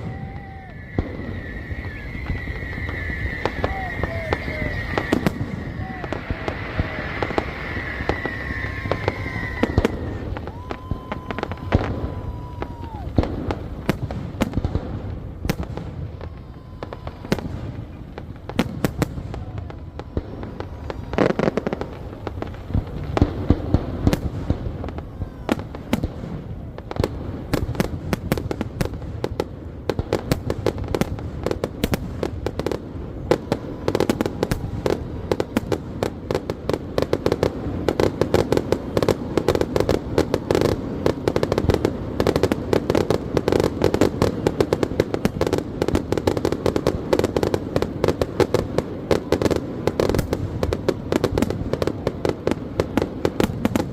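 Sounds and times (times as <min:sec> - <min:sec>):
fireworks bangs and crackles: 0:00.0 - 0:53.9.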